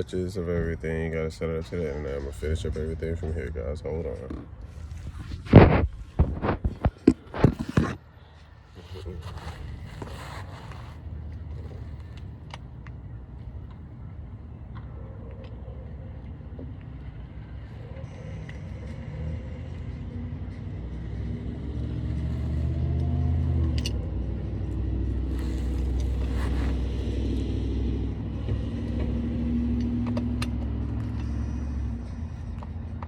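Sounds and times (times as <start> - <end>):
vehicle engine running: 16.5 - 33.0.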